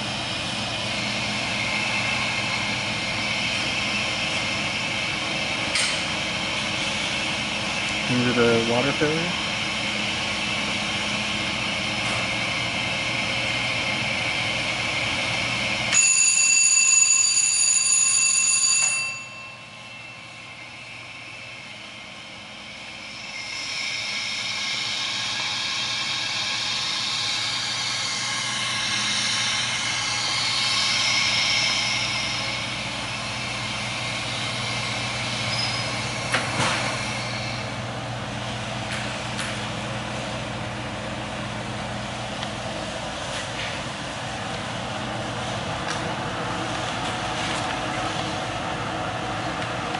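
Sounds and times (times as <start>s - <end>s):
furnace humming and hissing: 0.0s - 49.9s
high-pitched alarm buzzer: 15.9s - 37.7s
rush of gas flow: 21.5s - 37.9s.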